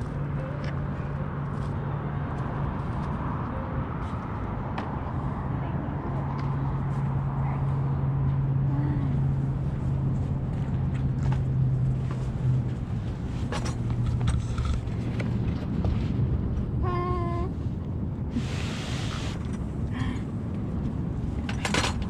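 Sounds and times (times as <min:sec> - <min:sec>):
vehicle engine humming: 0:00.0 - 0:22.0.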